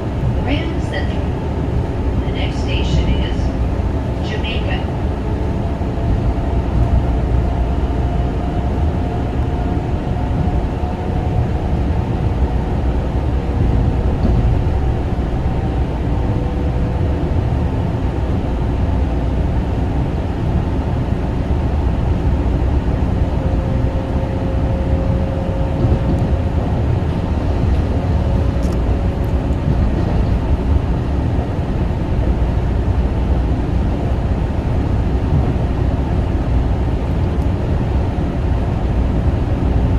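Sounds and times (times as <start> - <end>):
train wheels rumbling on rail: 0.0 - 39.9.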